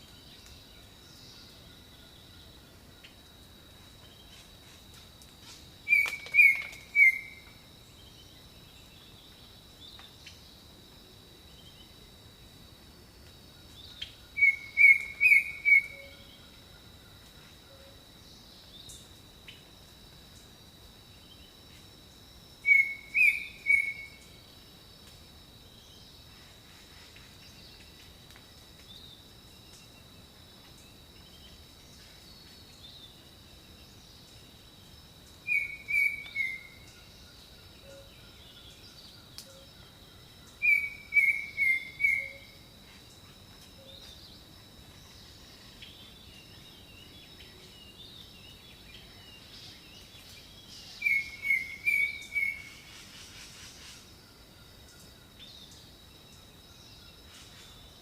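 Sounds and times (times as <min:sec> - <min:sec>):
high insect drone: 0:00.0 - 0:58.0
bird calling clear notes: 0:05.9 - 0:07.4, 0:14.4 - 0:16.2, 0:35.5 - 0:36.7, 0:40.6 - 0:42.5.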